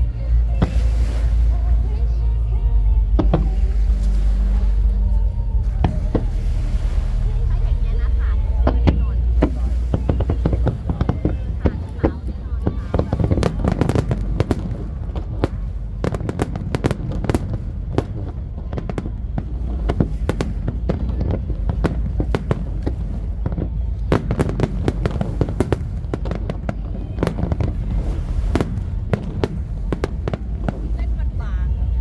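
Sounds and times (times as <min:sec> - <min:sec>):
steady low rumble: 0:00.0 - 0:32.0
fireworks bangs and cracks: 0:08.4 - 0:32.0.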